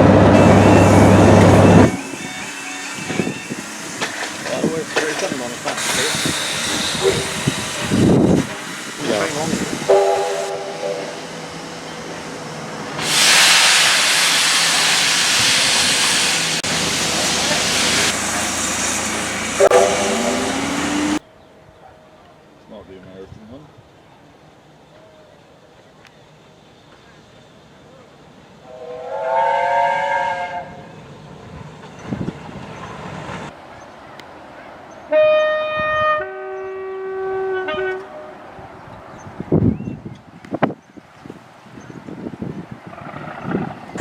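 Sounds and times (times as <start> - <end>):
loud rushing hiss: 0.0 - 21.2
train rumble: 0.0 - 44.0
train horn chord: 9.9 - 11.2, 19.6 - 21.2, 28.7 - 30.8, 35.1 - 38.5.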